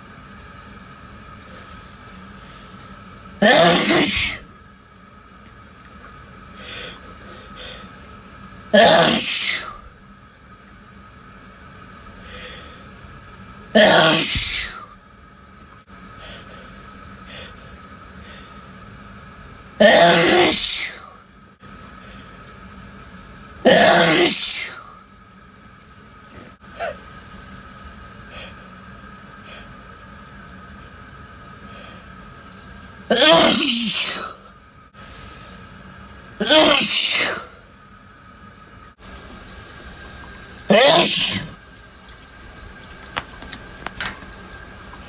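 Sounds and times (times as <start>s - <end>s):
person sneezing loudly: 3.4s - 4.4s, 8.8s - 9.8s, 13.8s - 14.9s, 19.8s - 21.1s, 23.7s - 24.9s, 33.1s - 34.4s, 36.4s - 37.6s, 40.7s - 41.6s.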